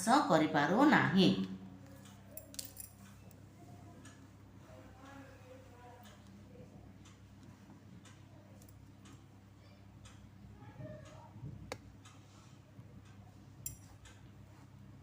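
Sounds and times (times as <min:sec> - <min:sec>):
low steady hum: 0:00.0 - 0:15.0
faint regular ticking: 0:06.0 - 0:14.4.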